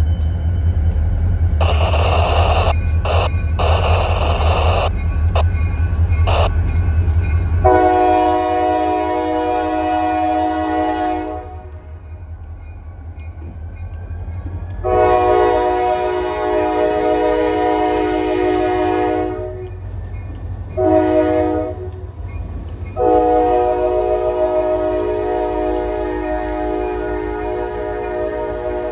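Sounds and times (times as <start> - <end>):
low train rumble: 0.0 - 28.9
locomotive air horn blasts: 7.6 - 11.8, 14.8 - 19.7, 20.8 - 21.9, 23.0 - 28.9.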